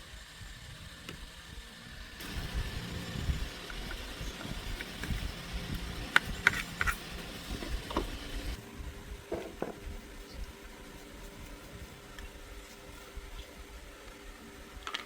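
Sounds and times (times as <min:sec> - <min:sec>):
faint steady hum: 0:00.0 - 0:15.0
motorbike engine idling: 0:01.0 - 0:08.6.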